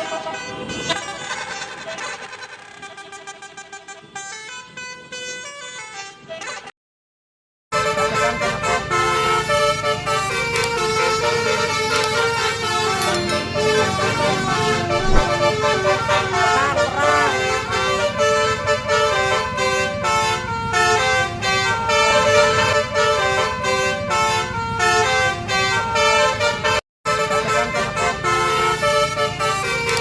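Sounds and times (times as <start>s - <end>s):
road and engine noise: 7.8s - 30.0s
air horns playing stepped tune: 7.9s - 20.2s.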